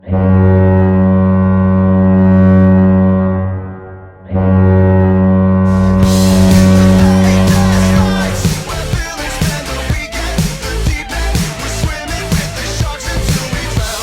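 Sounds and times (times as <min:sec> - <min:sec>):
music with a beat: 0:05.7 - 0:14.0.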